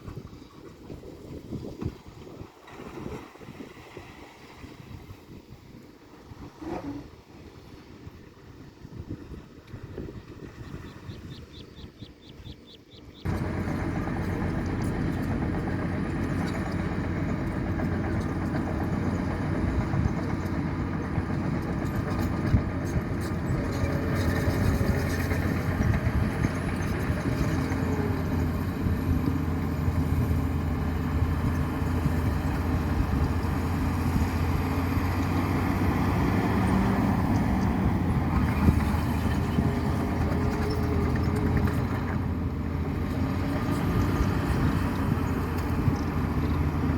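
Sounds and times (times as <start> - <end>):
heavy truck engine running: 13.2 - 46.9.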